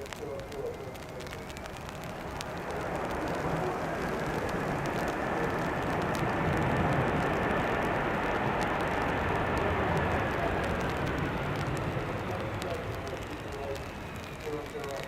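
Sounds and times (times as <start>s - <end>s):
jet engines in reverse thrust: 0.0s - 15.0s.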